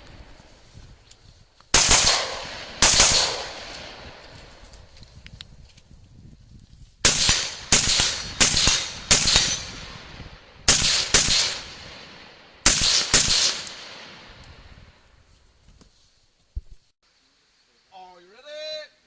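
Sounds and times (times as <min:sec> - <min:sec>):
rifle shots with echo: 0:01.7 - 0:04.6, 0:07.0 - 0:14.4.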